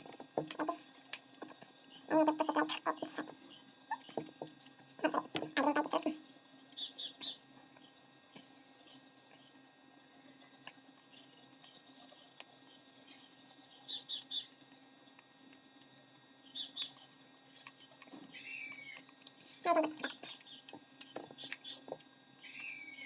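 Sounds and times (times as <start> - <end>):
low room hum: 0.0 - 23.0
bird chirping: 17.8 - 19.0, 21.4 - 23.0.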